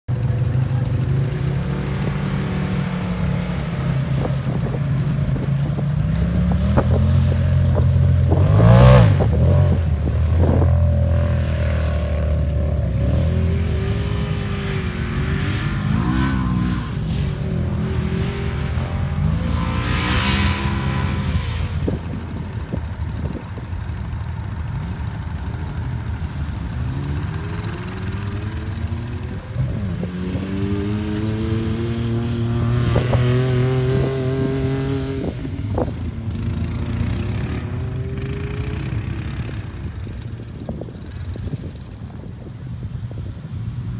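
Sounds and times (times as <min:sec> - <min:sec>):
off-road vehicle engine revving: 0:00.1 - 0:40.8.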